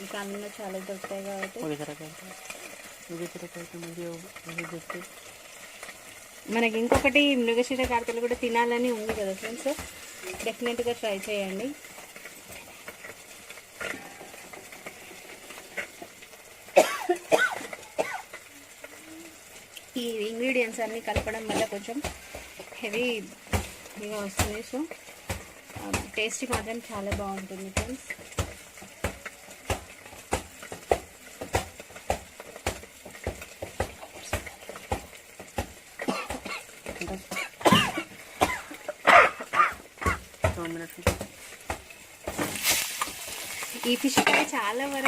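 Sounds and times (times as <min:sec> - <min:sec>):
fish sizzling in oil: 0:00.0 - 0:45.0.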